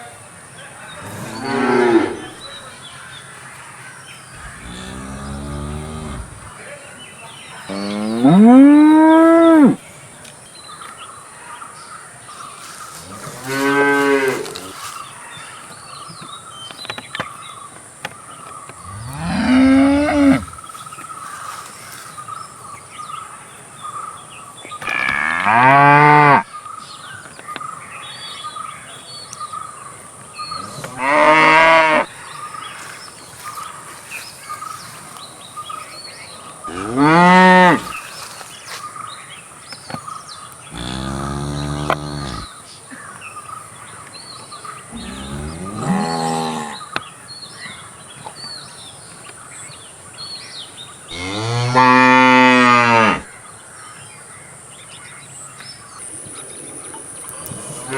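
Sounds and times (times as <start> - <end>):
cow mooing: 1.0 - 2.4, 4.4 - 6.5, 18.9 - 20.6, 36.7 - 38.0, 40.7 - 42.5, 45.0 - 46.8, 51.1 - 53.2.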